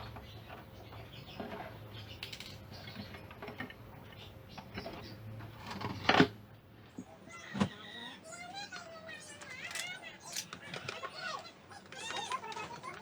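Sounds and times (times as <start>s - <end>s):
small mechanical clicks and rattles: 9.4s - 13.0s.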